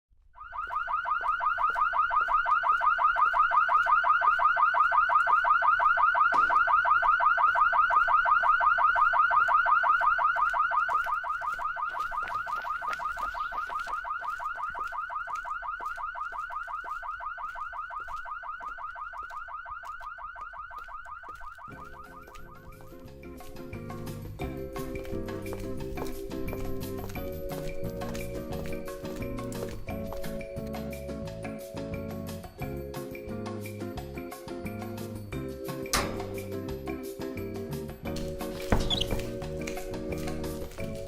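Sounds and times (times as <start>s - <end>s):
electronic alarm pulsing tone: 0.4s - 23.1s.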